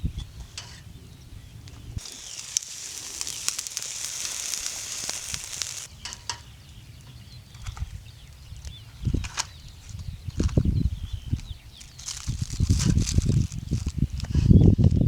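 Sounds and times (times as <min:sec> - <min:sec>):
food sizzling in a hot pan: 0:02.0 - 0:05.9.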